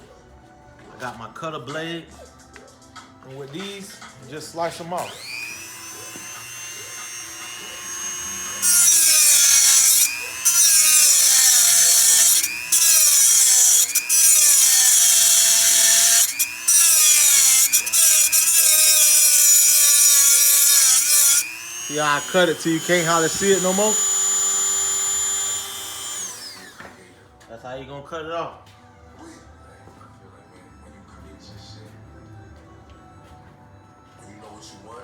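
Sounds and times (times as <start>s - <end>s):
rotary tool grinding metal: 5.0s - 26.8s.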